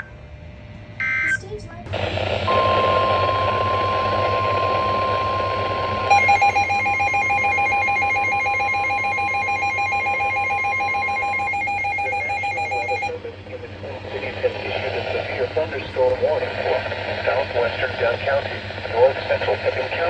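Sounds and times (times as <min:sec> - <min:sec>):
steady alert tone: 0:01.9 - 0:13.1
fast pulsing electronic beeping: 0:01.9 - 0:13.2.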